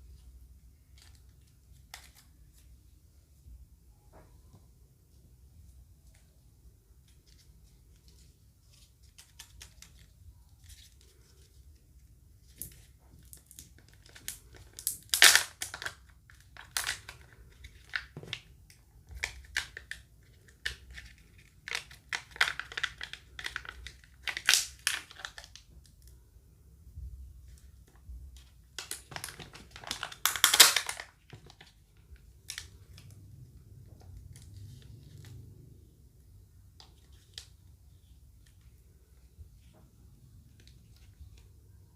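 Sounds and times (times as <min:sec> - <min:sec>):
crinkly packaging torn and crumpled: 0:12.5 - 0:26.1, 0:28.4 - 0:33.2.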